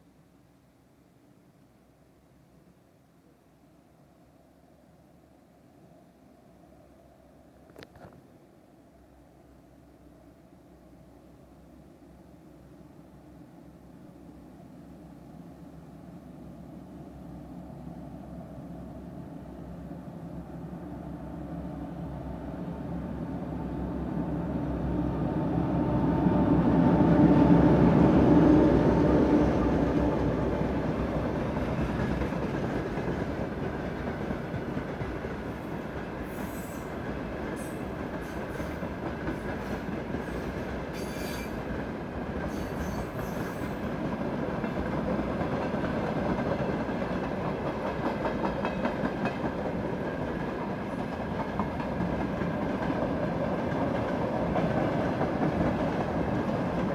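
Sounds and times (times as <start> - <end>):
diesel locomotive passing: 15.3 - 56.9.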